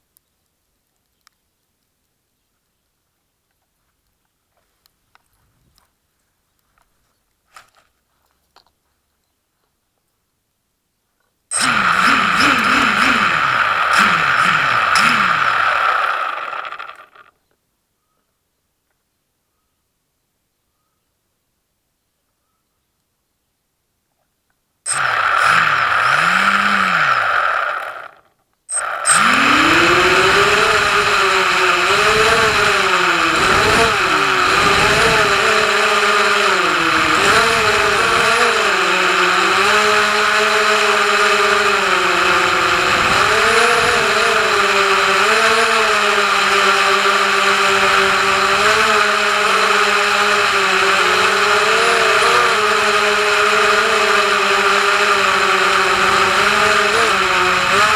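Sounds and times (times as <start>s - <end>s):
drone propellers buzzing: 11.5s - 17.2s, 24.9s - 57.9s.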